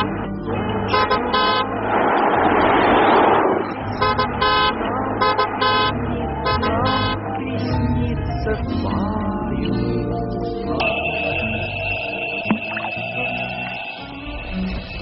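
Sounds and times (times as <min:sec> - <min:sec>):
loud rushing noise: 0:00.0 - 0:05.4
car horn honking: 0:00.9 - 0:01.7, 0:03.9 - 0:07.3.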